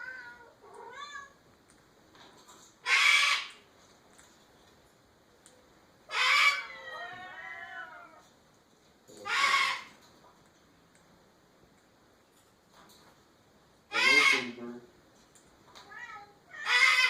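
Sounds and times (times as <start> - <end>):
harsh meow-like animal calls: 6.1 - 8.3, 9.2 - 10.0, 13.9 - 14.6, 15.8 - 17.0.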